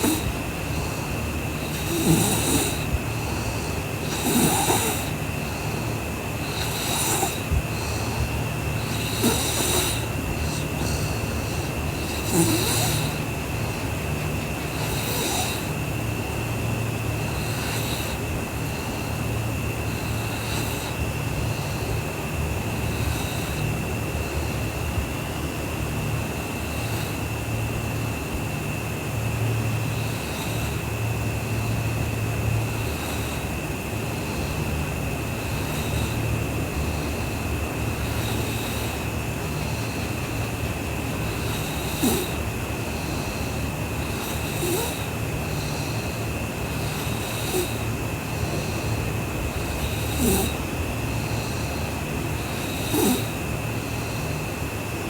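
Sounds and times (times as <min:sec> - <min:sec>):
girl snoring: 0:00.0 - 0:16.0, 0:17.0 - 0:22.1, 0:22.7 - 0:24.7, 0:34.2 - 0:54.3.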